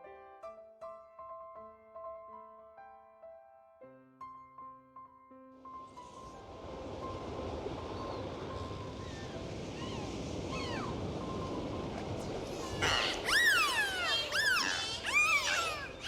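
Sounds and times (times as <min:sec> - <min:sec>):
water wash: 0:05.9 - 0:16.0
dolphin whistles: 0:08.0 - 0:16.0.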